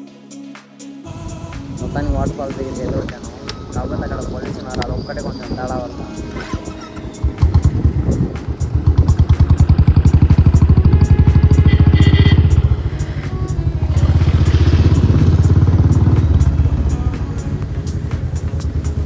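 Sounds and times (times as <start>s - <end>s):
motorcycle engine running: 5.8s - 19.0s.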